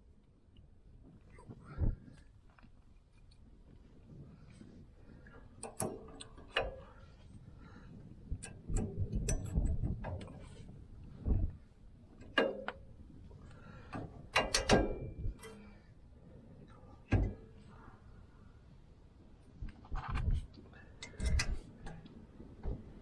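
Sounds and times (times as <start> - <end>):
metal tools clicking and clanking: 14.3 - 15.7.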